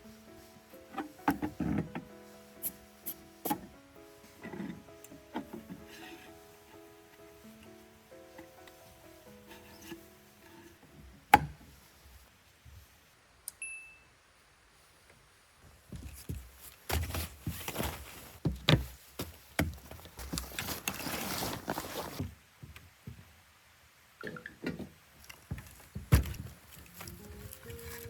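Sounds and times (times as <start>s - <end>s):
background music: 0.0s - 12.0s, 26.8s - 28.0s
camping gear rustling and clattering: 0.0s - 13.1s, 15.6s - 23.4s, 24.2s - 28.0s.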